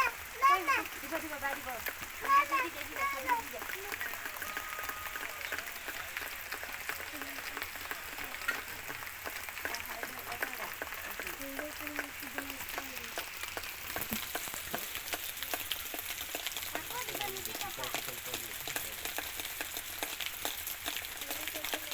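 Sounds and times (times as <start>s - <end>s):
heavy rain on leaves: 0.0s - 21.9s.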